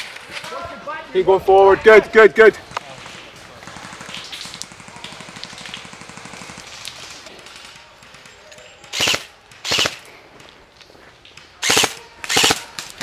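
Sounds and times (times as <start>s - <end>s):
airsoft guns firing: 2.8s - 10.1s, 11.6s - 13.0s.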